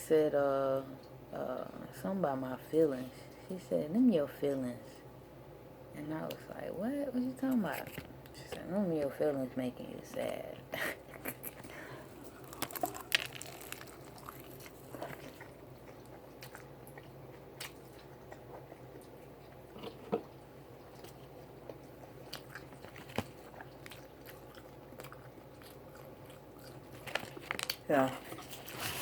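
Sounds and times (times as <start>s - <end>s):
crunchy bites and chewing: 12.2s - 27.9s.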